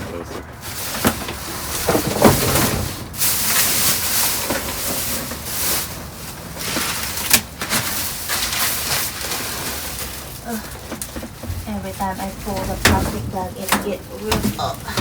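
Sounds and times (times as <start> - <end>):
plastic bags rustling and tearing: 0.1 - 15.0
things knocking in dumpster: 0.8 - 5.5, 10.7 - 15.0.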